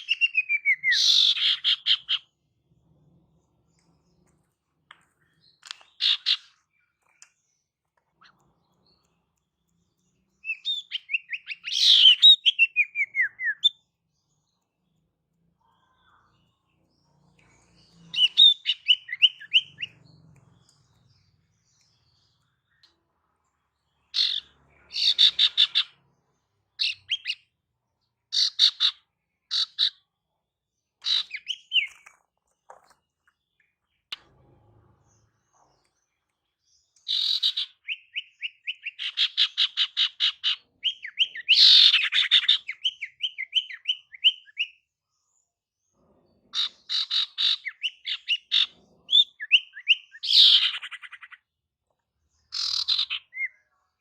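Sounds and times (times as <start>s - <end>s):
bird chattering calls: 0.0s - 2.3s, 5.7s - 6.6s, 10.5s - 13.7s, 24.1s - 26.0s, 37.1s - 44.6s, 52.5s - 53.5s.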